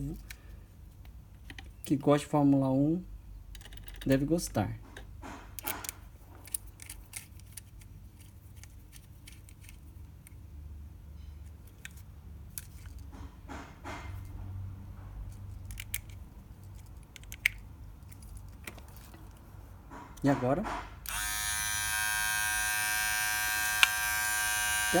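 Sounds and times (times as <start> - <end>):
small parts clicking and tapping: 1.0 - 1.8, 3.5 - 4.2, 4.9 - 10.4, 15.3 - 19.4.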